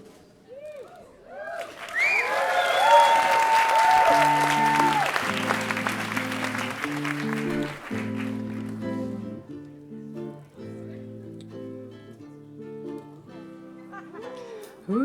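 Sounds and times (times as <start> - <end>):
whistles from audience: 0.5 - 8.1
audience applause and cheering: 1.3 - 9.1
band playing sustained chords: 4.4 - 9.5.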